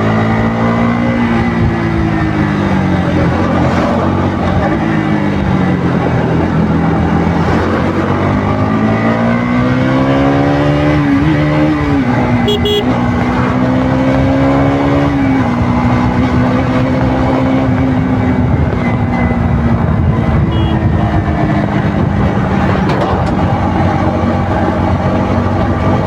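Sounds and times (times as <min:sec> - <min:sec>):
motorcycle engine revving: 0:00.0 - 0:26.0.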